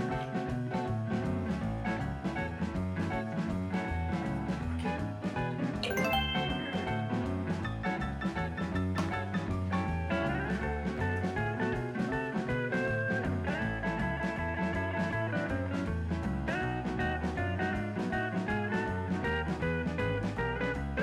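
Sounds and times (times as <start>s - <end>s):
upbeat bluesy swing guitar music: 10.2s - 20.7s.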